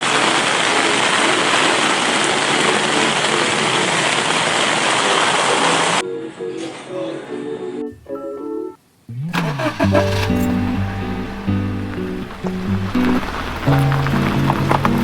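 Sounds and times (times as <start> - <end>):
heavy rain falling: 0.0 - 6.0, 9.3 - 15.0
soft music: 6.0 - 15.0.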